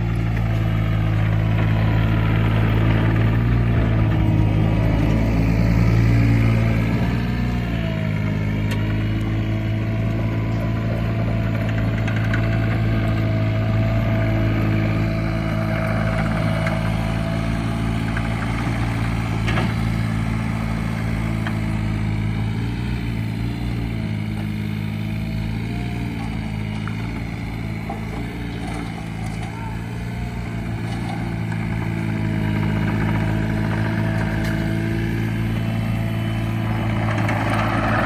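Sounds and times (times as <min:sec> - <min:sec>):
diesel engine running: 0:00.0 - 0:38.0.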